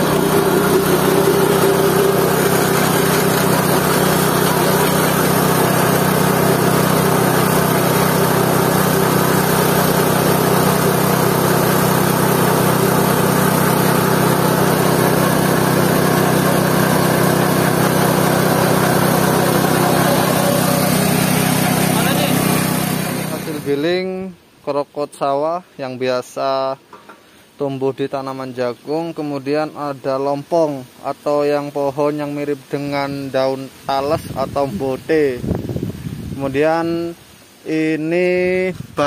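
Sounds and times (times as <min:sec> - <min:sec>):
small petrol engine running: 0:00.0 - 0:23.7.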